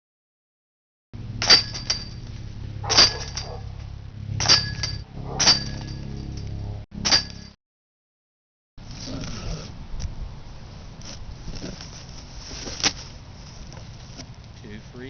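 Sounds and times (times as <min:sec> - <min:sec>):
metallic clangs from steel basket: 0:01.4 - 0:02.3, 0:02.9 - 0:03.7, 0:04.4 - 0:07.5.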